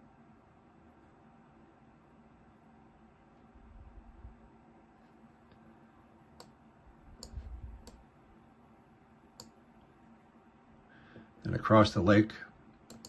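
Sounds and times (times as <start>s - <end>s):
computer mouse clicks: 6.4s - 6.6s, 7.2s - 8.0s, 9.4s - 9.6s.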